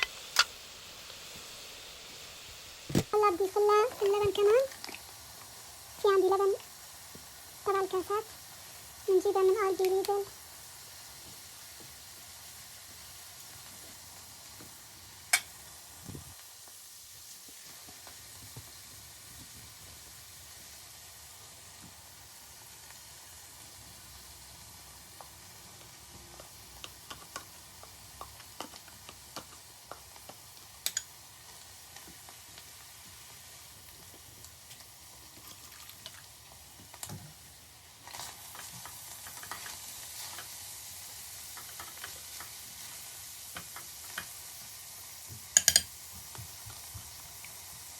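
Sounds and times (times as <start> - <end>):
stew sizzling in a pot: 0.0 - 47.9
spoon scraping and clicking: 45.6 - 45.9.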